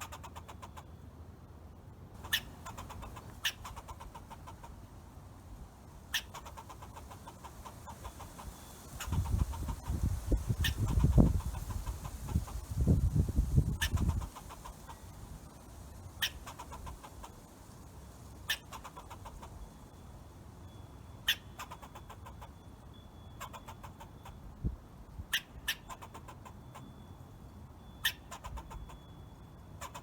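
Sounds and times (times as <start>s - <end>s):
squirrel chipping call: 2.2s - 4.8s, 6.1s - 17.5s, 18.4s - 19.6s, 23.4s - 24.2s.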